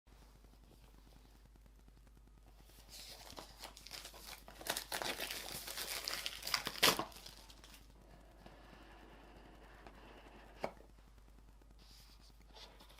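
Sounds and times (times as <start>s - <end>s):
packaging tearing and crinkling: 2.9s - 7.9s.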